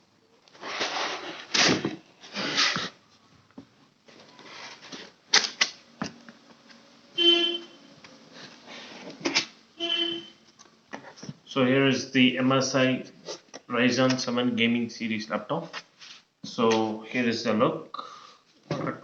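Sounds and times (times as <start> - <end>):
foam packing rustling and scraping: 0.5 - 3.2, 4.0 - 5.6.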